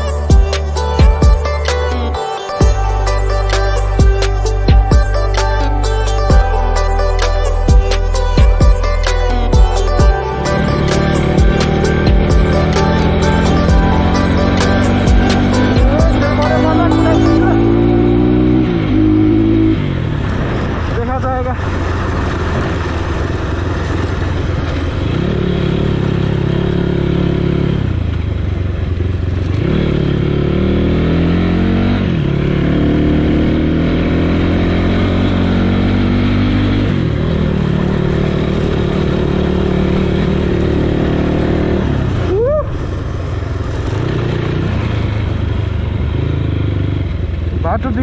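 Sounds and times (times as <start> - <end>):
motorcycle engine revving: 7.3 - 48.0.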